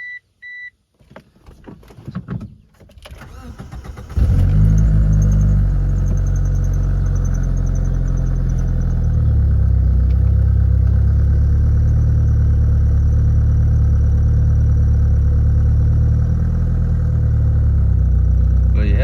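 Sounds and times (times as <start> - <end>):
car engine idling: 3.2 - 19.0.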